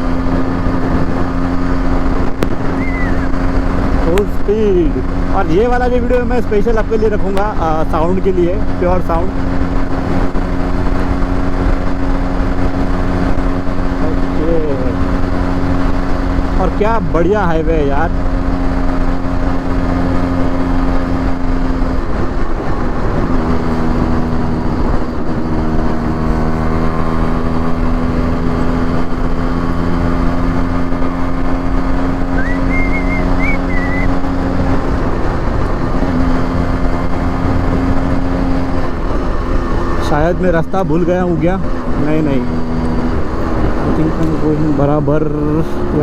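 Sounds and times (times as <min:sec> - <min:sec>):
motorcycle engine cruising: 0:00.0 - 0:46.0
short high whistling tone: 0:02.7 - 0:03.3, 0:32.3 - 0:34.2.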